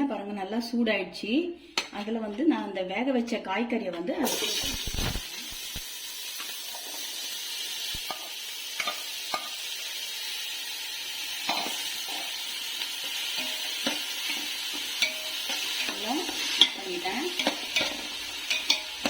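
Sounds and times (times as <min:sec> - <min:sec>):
vegetables sizzling in oil: 0:04.2 - 0:19.0
spatula scraping pan: 0:11.5 - 0:19.0.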